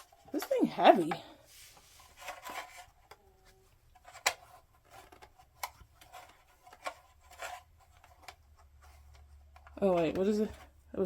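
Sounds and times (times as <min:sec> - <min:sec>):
plastic parts clicking and knocking: 0:02.2 - 0:10.8.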